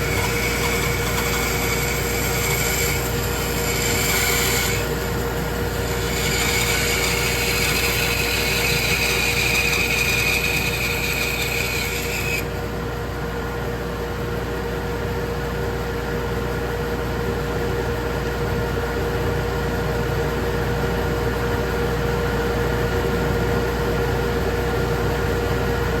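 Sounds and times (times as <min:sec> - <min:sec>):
saw blade cutting wood: 0:00.0 - 0:12.5
bandsaw running: 0:00.0 - 0:12.6.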